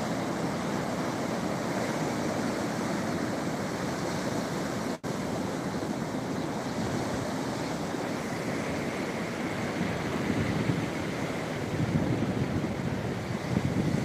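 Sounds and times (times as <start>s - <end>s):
sea waves washing on shore: 0.0s - 14.0s
wind buffeting microphone: 4.8s - 14.0s.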